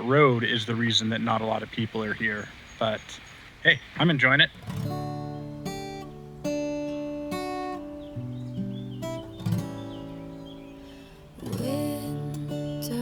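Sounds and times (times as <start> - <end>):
acoustic guitar strumming: 4.4 - 13.0.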